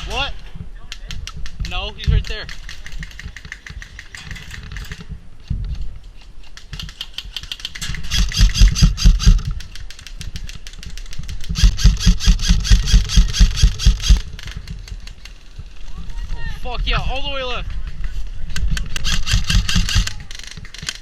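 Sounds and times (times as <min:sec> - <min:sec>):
airsoft rifle full-auto bursts: 0:08.0 - 0:09.5, 0:11.5 - 0:14.2, 0:18.9 - 0:20.1.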